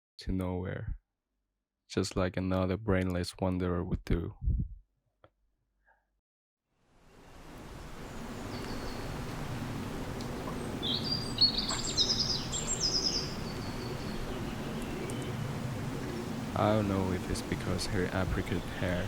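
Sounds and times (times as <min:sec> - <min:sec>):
small bird chirping: 0:08.1 - 0:09.4, 0:10.2 - 0:16.3.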